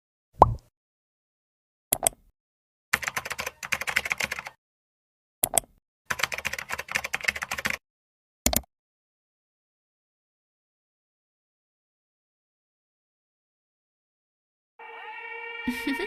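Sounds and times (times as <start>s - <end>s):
computer keyboard typing: 3.0s - 4.6s, 5.4s - 7.8s, 8.5s - 8.7s.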